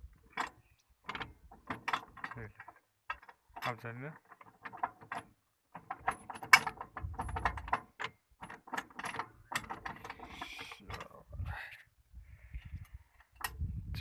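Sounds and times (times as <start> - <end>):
farm machinery clattering: 0.2 - 11.2.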